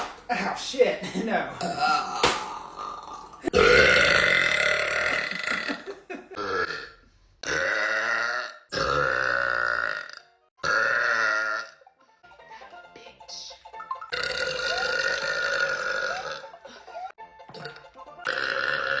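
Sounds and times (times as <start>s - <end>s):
woman burping loudly: 1.5s - 11.8s, 14.1s - 16.8s, 17.5s - 19.0s.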